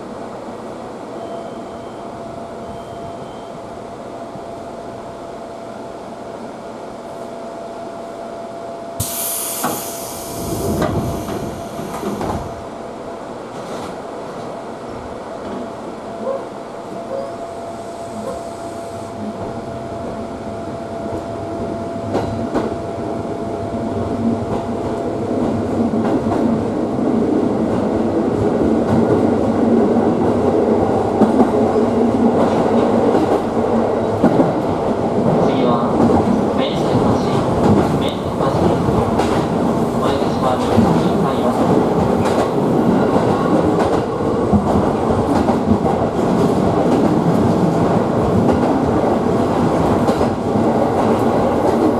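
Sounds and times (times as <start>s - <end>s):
train running on rails: 0.0s - 51.9s
air hiss: 9.0s - 12.6s.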